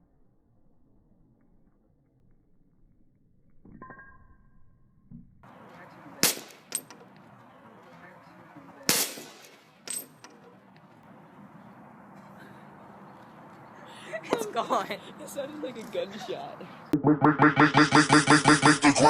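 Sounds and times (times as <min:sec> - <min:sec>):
gas cartridge bursting with a bang: 0:08.9 - 0:09.6.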